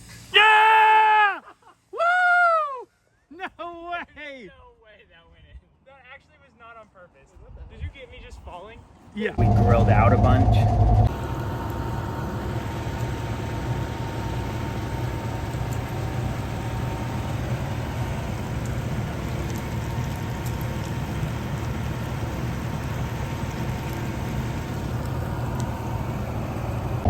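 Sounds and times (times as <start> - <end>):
steady low rumble: 9.4 - 27.0
faint crackles: 14.5 - 26.2.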